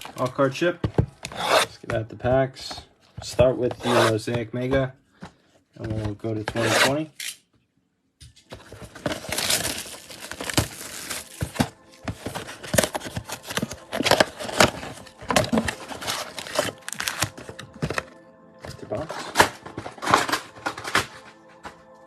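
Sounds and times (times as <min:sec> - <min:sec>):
plastic wrap crinkling and tearing: 0:08.6 - 0:18.1.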